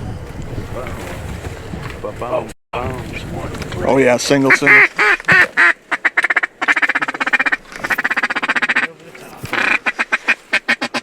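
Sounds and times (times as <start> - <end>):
duck call chattering: 4.4 - 11.0.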